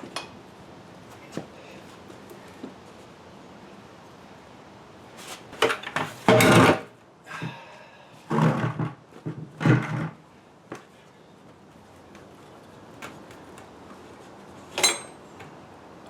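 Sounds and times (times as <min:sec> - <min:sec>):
metal parts and tools scraping: 0:14.8 - 0:15.2.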